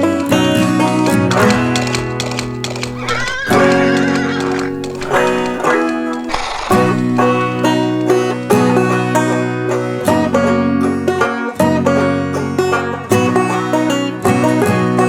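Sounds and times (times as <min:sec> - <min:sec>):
banjo-like tune with beat: 0:06.7 - 0:15.0.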